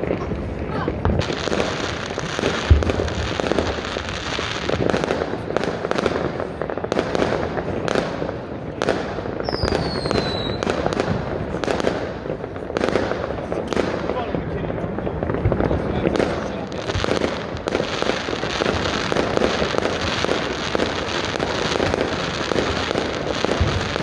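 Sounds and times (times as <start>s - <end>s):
heavy deep firework bang: 0.0s - 4.9s
firecrackers crackling: 0.0s - 24.0s
whistling rocket: 9.4s - 10.8s.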